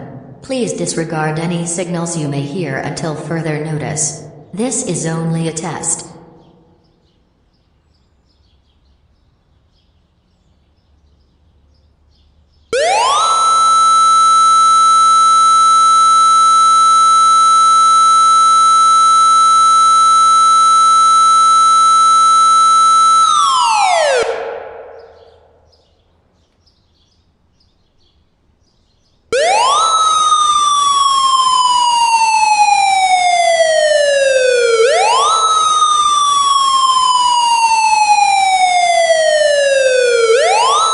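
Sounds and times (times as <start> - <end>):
warning siren wailing: 12.7 - 25.6, 29.3 - 40.9.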